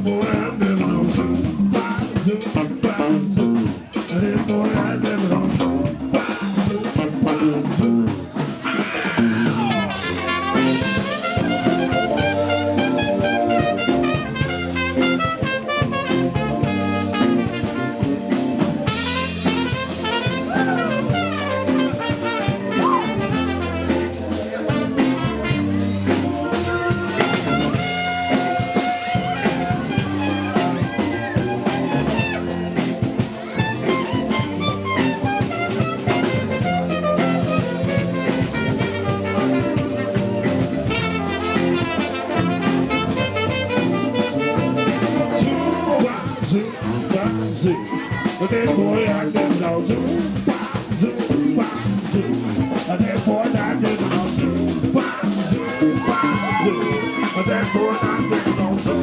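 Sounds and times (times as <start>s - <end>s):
live band playing: 0.0s - 59.0s
person singing: 0.0s - 59.0s.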